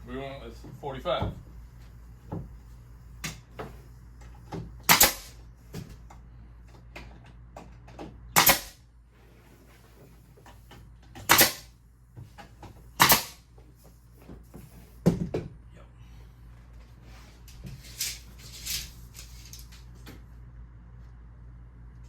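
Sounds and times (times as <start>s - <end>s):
nail gun firing: 4.8s - 5.4s, 8.4s - 8.8s, 11.2s - 11.7s, 13.0s - 13.4s.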